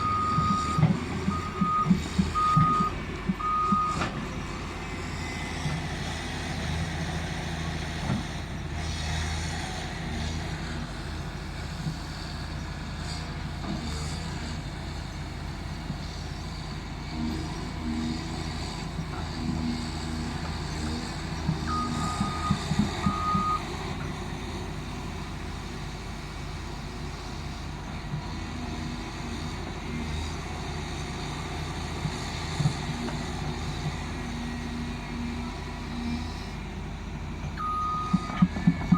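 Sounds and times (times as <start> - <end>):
excavator diesel engine running: 0.0 - 38.9
backup alarm beeps: 37.6 - 38.4.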